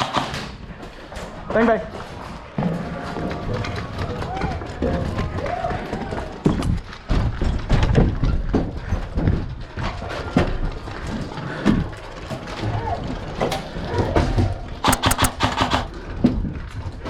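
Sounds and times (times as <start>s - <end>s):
gear knocking: 14.9s - 15.5s.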